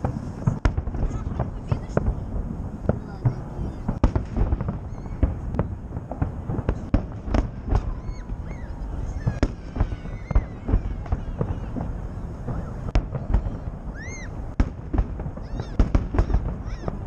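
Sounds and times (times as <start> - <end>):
continuous low rumble: 0.0 - 17.0
fireworks bangs with echo: 0.0 - 17.0
crowd voices: 1.0 - 4.0, 4.6 - 14.6.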